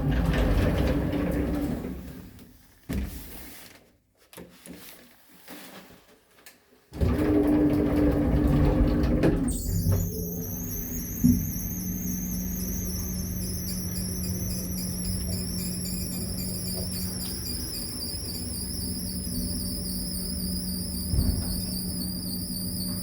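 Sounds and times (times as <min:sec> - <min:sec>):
lift machinery starting: 0:00.0 - 0:02.1, 0:07.0 - 0:23.0
high scratchy squeal: 0:09.6 - 0:23.0
steady machinery hum: 0:09.6 - 0:23.0.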